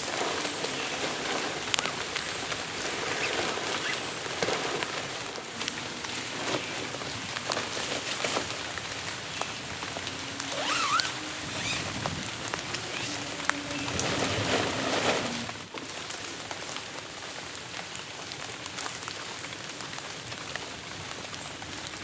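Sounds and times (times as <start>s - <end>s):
heavy rain hiss: 0.0s - 22.0s
raindrops ticking on surfaces: 0.0s - 22.0s.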